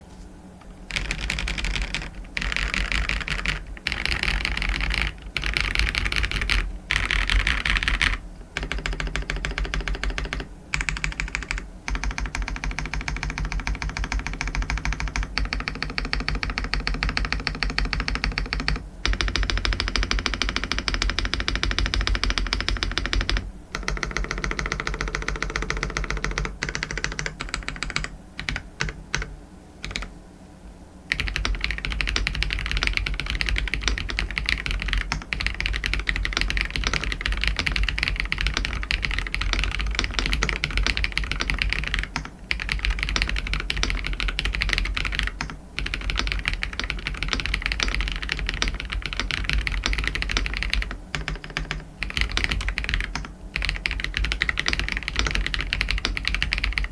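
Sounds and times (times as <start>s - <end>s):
rapid mechanical keyboard typing: 0.9s - 30.1s, 31.1s - 56.9s.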